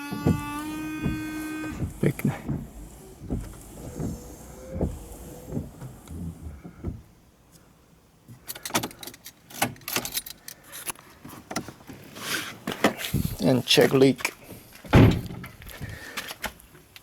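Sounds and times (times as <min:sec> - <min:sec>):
small electric motor whining: 0:00.0 - 0:06.5
low knocks: 0:00.0 - 0:07.1.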